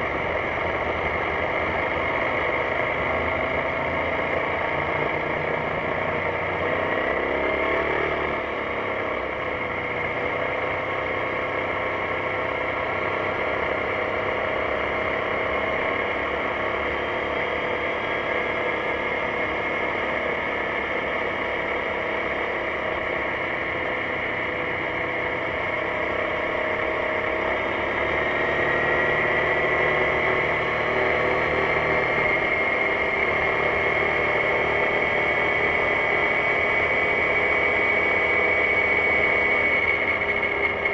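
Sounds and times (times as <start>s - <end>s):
scooter engine running: 0.0s - 40.9s
wind and road noise: 0.0s - 40.9s.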